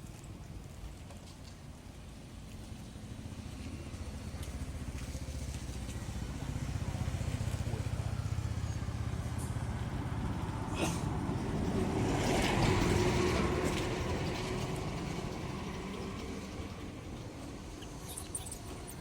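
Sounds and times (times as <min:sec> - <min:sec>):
vehicle engine rumbling: 0:02.1 - 0:19.0.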